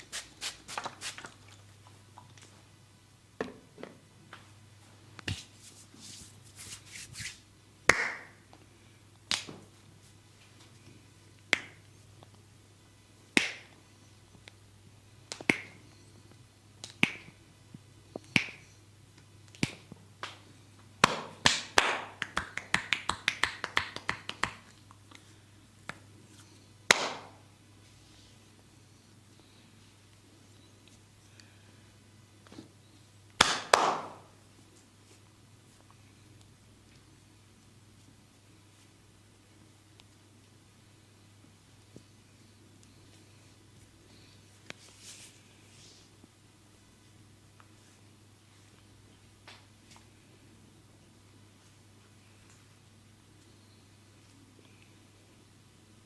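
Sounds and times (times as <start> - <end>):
hands snapping and slapping: 9.3 - 9.6, 11.5 - 11.8, 13.4 - 13.7, 15.3 - 15.8, 16.8 - 17.3, 18.2 - 18.6, 19.5 - 20.4, 21.0 - 24.8, 33.4 - 34.2.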